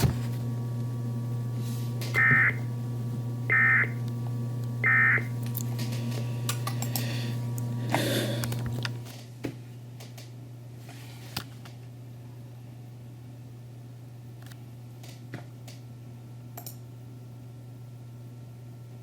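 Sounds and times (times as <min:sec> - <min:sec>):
steady low hum: 0:00.0 - 0:19.0
warbling data tone bursts: 0:03.5 - 0:04.0, 0:04.8 - 0:05.3.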